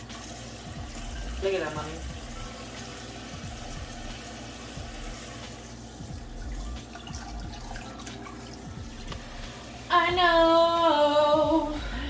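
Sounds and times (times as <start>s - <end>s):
tap running into sink: 0.0s - 9.5s.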